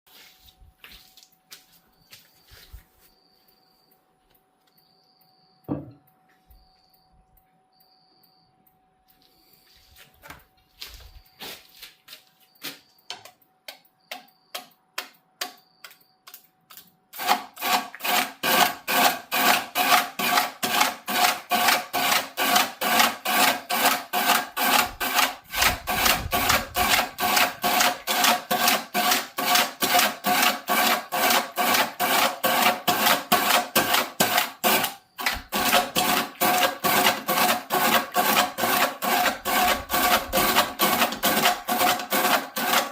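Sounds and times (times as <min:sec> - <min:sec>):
hand tool stroking on wood: 0:17.2 - 0:42.9.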